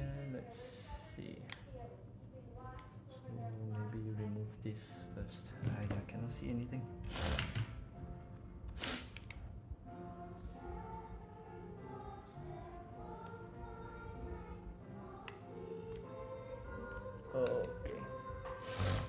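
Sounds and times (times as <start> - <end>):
choir-like background music: 3.4 - 19.0
short hissing bursts: 7.1 - 7.7, 8.7 - 9.3, 18.6 - 19.0.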